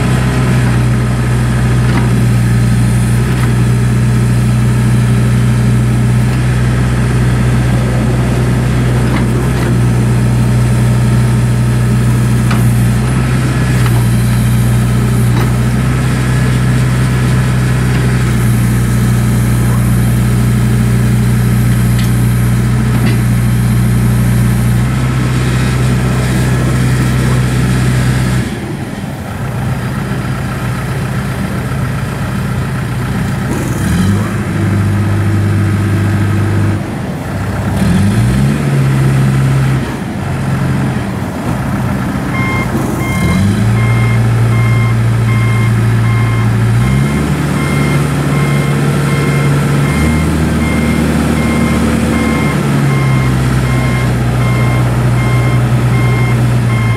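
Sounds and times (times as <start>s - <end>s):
diesel engine running: 0.0s - 56.9s
reversing alarm beeping: 42.3s - 56.9s.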